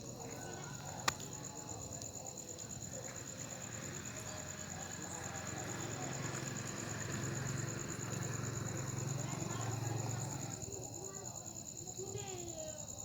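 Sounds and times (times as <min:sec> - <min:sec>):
cricket chirping: 0:00.0 - 0:13.0.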